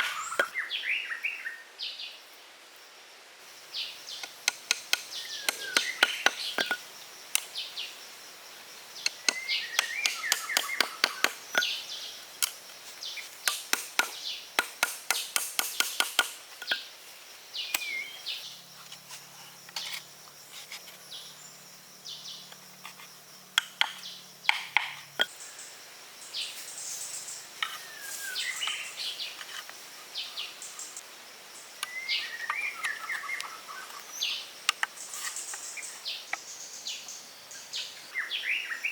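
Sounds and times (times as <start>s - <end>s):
birds chirping: 3.7s - 8.0s, 9.0s - 12.2s.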